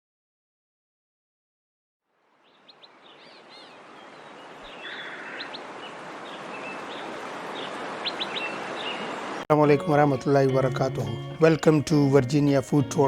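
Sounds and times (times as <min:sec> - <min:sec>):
small birds chirping: 0:02.4 - 0:09.4.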